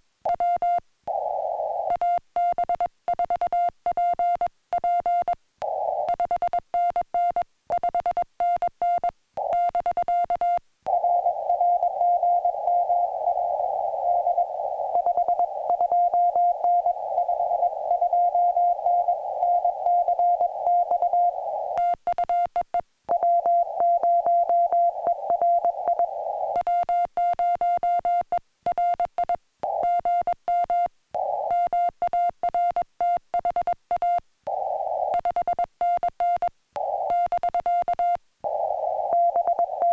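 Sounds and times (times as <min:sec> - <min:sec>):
morse code beeps: 0:00.3 - 0:39.9
radio hiss: 0:01.1 - 0:01.9, 0:05.6 - 0:06.1, 0:10.9 - 0:21.9, 0:23.2 - 0:26.6, 0:31.2 - 0:31.6, 0:34.5 - 0:35.2, 0:36.8 - 0:37.2, 0:38.5 - 0:39.9.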